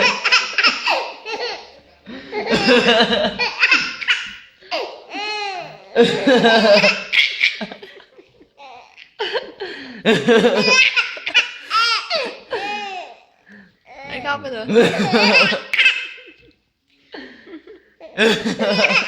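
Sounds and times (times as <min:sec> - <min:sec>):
baby laughing: 0:00.0 - 0:08.0, 0:10.4 - 0:13.2, 0:13.9 - 0:16.4, 0:18.0 - 0:19.0.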